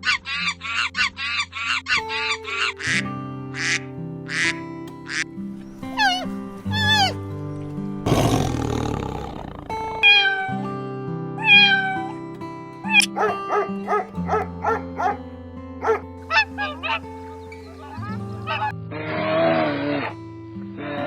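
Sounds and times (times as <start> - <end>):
background music: 0.0 - 21.0
cat meowing: 10.0 - 10.6, 11.4 - 12.2.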